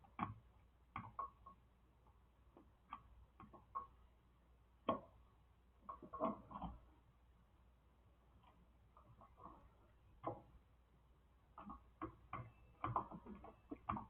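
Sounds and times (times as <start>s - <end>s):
faint clicks and taps: 0.0s - 4.1s, 4.8s - 5.2s, 5.8s - 7.0s, 8.4s - 10.6s, 11.5s - 14.0s.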